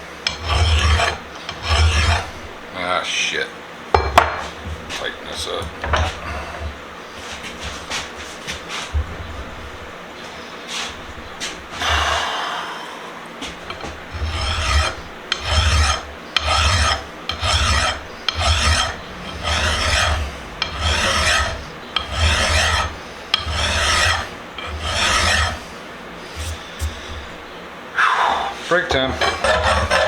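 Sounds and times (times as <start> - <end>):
file rasping on metal: 0.2 - 2.8, 13.4 - 27.6, 28.6 - 30.0.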